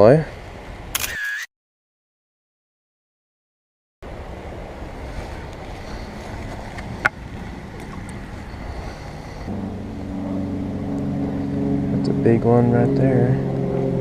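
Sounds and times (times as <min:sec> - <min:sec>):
sharp click: 0:01.0 - 0:01.5
water noise: 0:04.0 - 0:12.4
steady low hum: 0:04.0 - 0:14.0.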